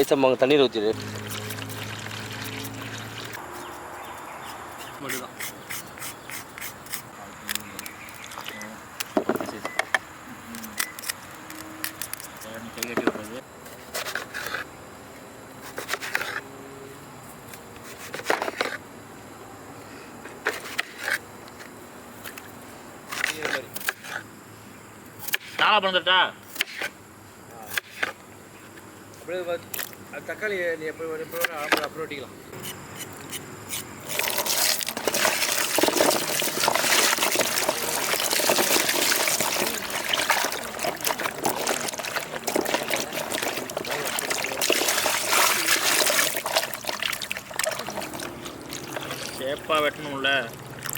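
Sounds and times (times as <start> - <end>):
water pouring and splashing: 0.7 - 3.4, 34.0 - 50.9
knife cutting vegetables: 13.7 - 14.6, 15.6 - 16.4.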